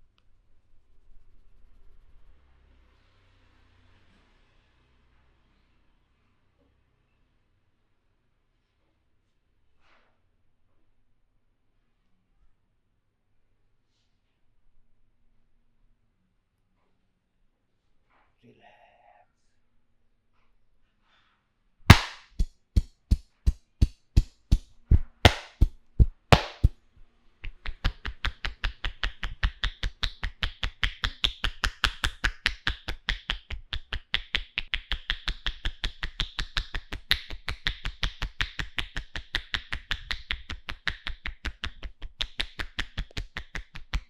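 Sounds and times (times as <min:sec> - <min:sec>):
hands slapping and tapping head: 0:21.9 - 0:26.7, 0:27.4 - 0:44.0.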